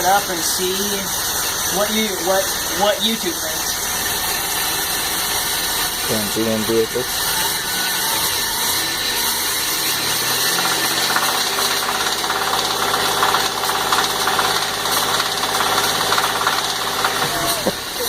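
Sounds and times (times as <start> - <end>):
car engine idling: 0.0 - 7.6, 8.2 - 18.0
fast light engine knocking: 10.4 - 18.0.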